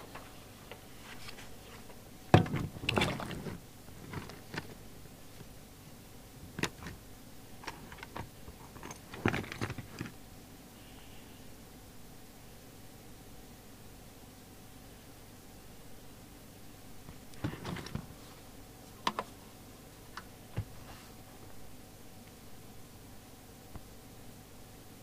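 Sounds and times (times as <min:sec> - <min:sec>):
packaging rustling: 0:02.4 - 0:04.8.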